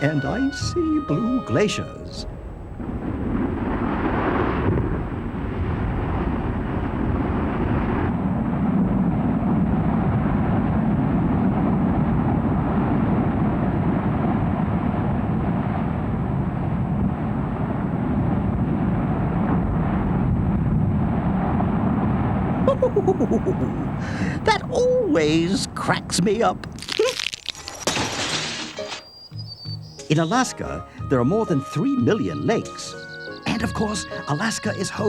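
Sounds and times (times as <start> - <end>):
low rumbling noise: 0.0 - 27.3.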